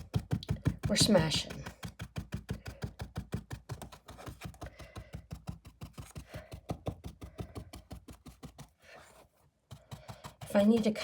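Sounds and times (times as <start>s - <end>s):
paintbrush tapping on canvas: 0.0s - 8.7s.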